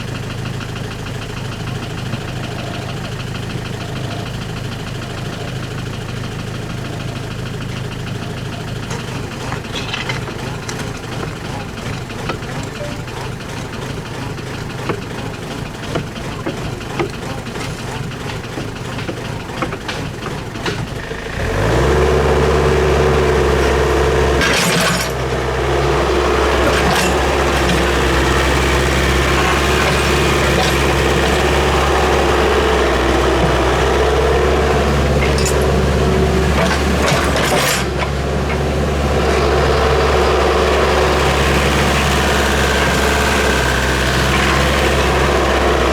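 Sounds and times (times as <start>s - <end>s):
excavator diesel engine running: 0.0s - 45.9s.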